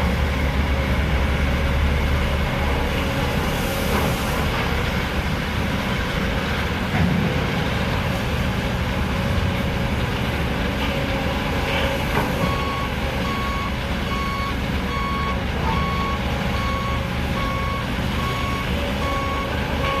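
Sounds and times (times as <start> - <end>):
heavy diesel machinery running: 0.0 - 20.0
reversing warning beeper: 12.4 - 20.0.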